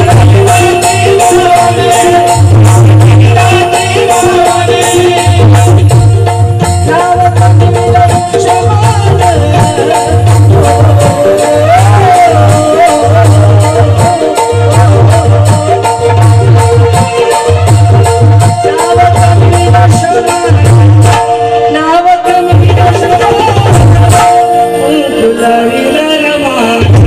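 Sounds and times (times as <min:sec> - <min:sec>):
steady drum beat: 0:00.0 - 0:24.8, 0:26.8 - 0:27.0
wavering melody line: 0:22.5 - 0:26.7.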